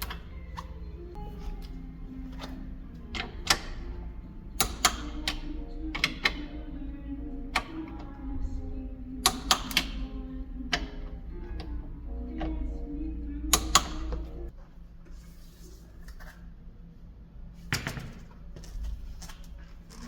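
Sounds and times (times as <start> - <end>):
low hum: 0.0 - 14.5
sustained background tones: 0.0 - 14.5.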